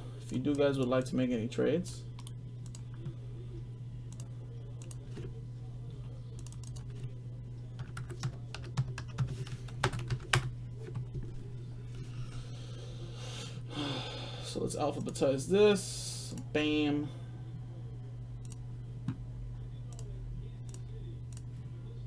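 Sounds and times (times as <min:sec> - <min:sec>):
steady low hum: 0:00.0 - 0:22.0
keyboard typing: 0:04.1 - 0:05.2, 0:06.4 - 0:07.1, 0:07.8 - 0:11.1.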